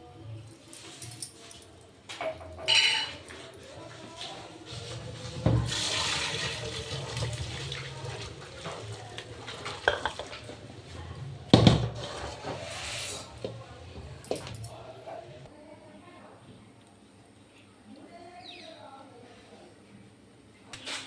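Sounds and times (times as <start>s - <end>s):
food sizzling: 2.8s - 15.5s
metal utensil knocking pan: 9.6s - 10.5s.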